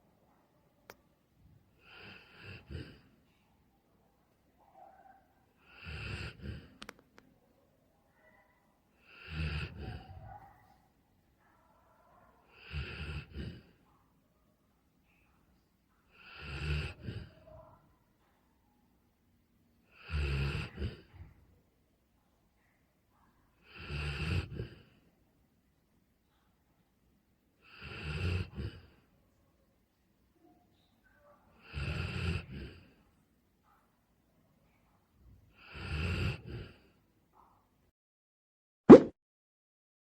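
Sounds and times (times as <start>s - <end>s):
dog snoring loudly: 1.8s - 3.0s, 5.6s - 6.7s, 9.0s - 10.1s, 12.5s - 13.6s, 16.2s - 17.3s, 19.9s - 21.1s, 23.6s - 24.8s, 27.6s - 28.9s, 31.6s - 32.8s, 35.6s - 36.8s.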